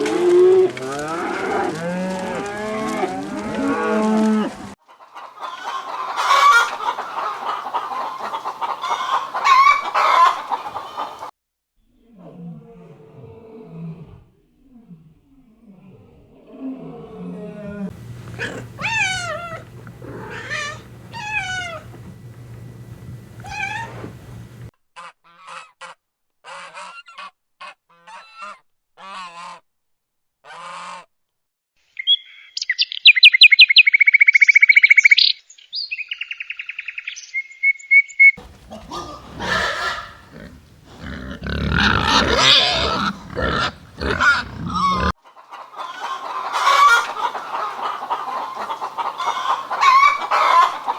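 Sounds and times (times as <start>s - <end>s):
bird calls: 5.1s - 11.3s, 17.9s - 24.7s, 32.0s - 50.9s
steady low hum: 17.9s - 24.7s, 38.4s - 45.1s.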